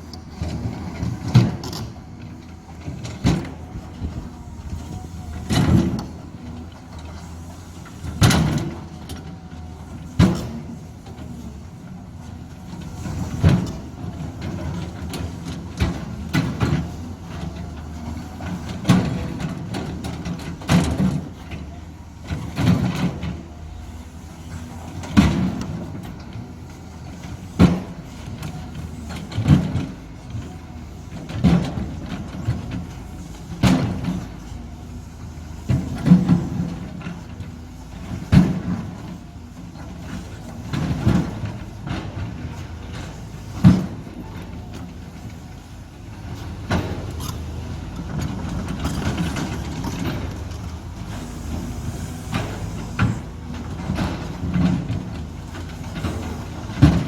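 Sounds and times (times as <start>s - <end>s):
excavator running: 0.0s - 57.0s
heavy clunk: 35.1s - 57.0s.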